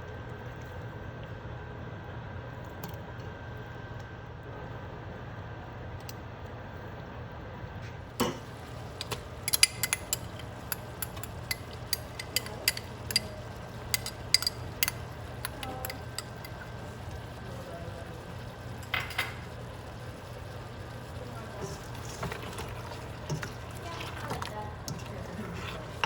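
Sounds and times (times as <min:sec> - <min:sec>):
metal spoon clinking on pan: 0:09.0 - 0:16.6.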